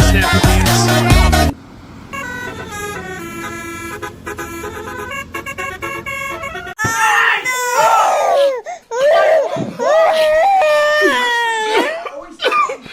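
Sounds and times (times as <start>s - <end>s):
multi-tone horn playing a tune: 2.1s - 6.8s
child crying: 6.7s - 12.2s.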